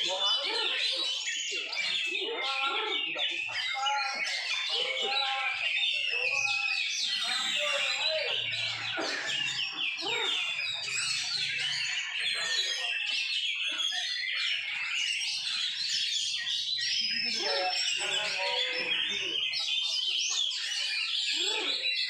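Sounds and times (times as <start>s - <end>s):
bird singing: 0.0s - 22.0s.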